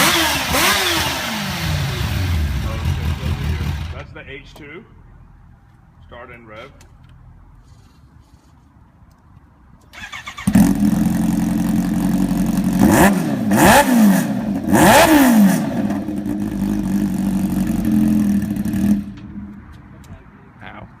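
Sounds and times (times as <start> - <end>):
motorcycle engine starting and idling: 0.0 - 4.2, 9.9 - 19.6
engine throttle blips: 10.0 - 19.9.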